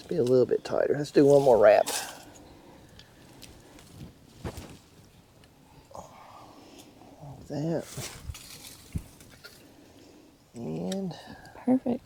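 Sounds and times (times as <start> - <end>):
fence wire clicking and scraping: 7.8 - 9.7.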